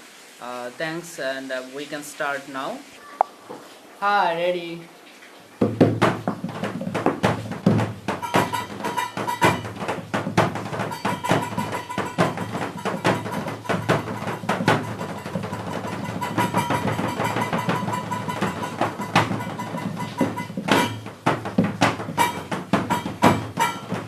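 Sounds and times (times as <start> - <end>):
irregular knocking strikes: 5.6 - 24.0
steady high held note: 14.2 - 21.1.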